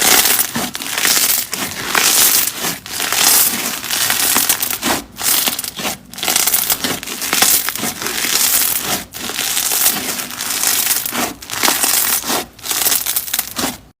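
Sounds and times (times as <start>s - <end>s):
slime squishing with crackling crunch: 0.0s - 14.0s.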